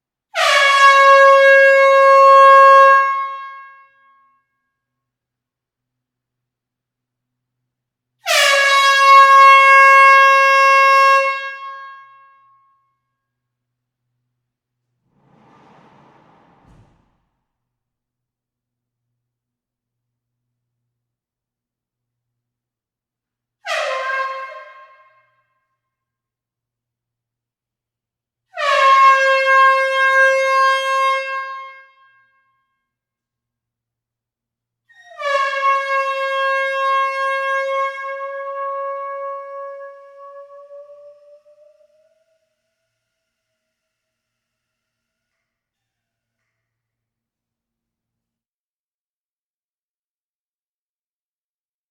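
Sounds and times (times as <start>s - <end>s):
loud air horn blast: 0.4s - 3.6s, 8.3s - 12.1s, 15.1s - 17.3s
air horn blast: 15.1s - 17.4s.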